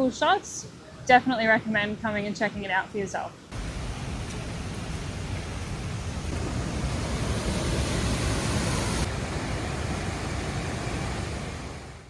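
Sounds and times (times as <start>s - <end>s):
steady rushing noise: 3.5s - 12.0s.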